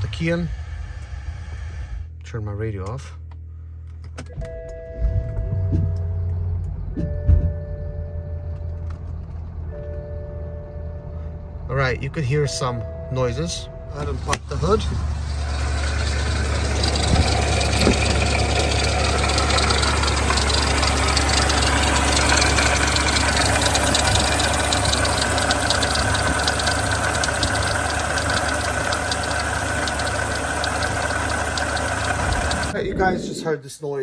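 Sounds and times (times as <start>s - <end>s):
car engine idling: 13.9s - 32.8s
water pump rattling: 14.0s - 32.8s.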